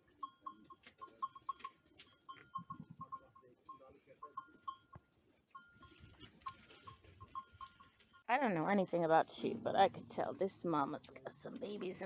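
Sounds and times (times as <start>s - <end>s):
sheep bells tinkling: 0.0s - 8.9s.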